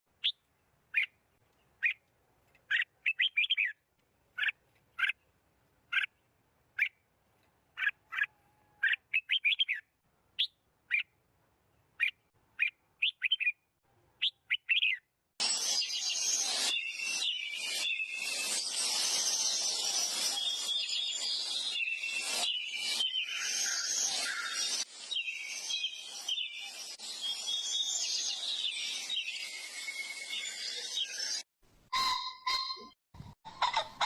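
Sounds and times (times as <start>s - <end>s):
small bird chirping: 0.2s - 2.0s, 2.6s - 3.8s, 4.4s - 5.3s, 5.9s - 7.0s, 7.8s - 11.2s, 11.9s - 33.0s.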